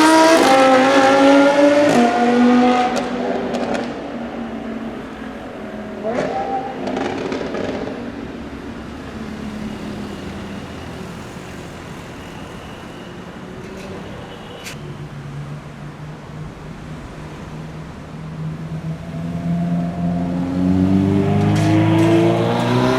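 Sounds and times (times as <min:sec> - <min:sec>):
sports car engine revving: 0:00.0 - 0:04.2, 0:06.0 - 0:08.1, 0:18.9 - 0:22.9.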